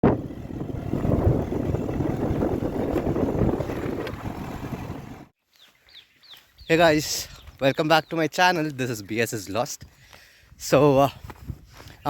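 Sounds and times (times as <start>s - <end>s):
wind buffeting microphone: 0.0s - 5.3s, 10.5s - 12.0s.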